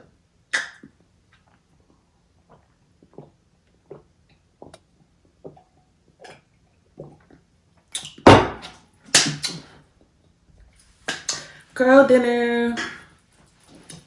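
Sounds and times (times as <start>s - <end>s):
person gulping a drink: 0.5s - 8.3s, 11.1s - 11.6s.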